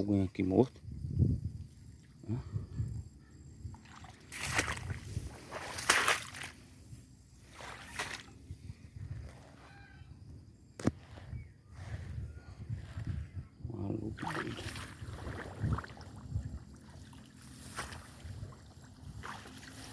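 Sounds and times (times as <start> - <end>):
splashing through shallow water: 3.7 - 6.8, 7.4 - 8.4, 14.0 - 19.9.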